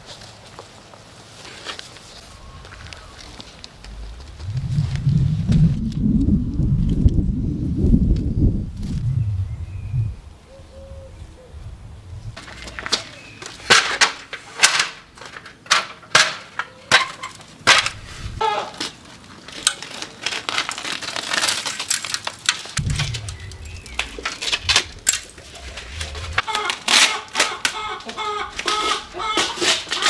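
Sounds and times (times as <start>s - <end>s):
low rumble: 2.3s - 10.6s, 22.8s - 26.8s.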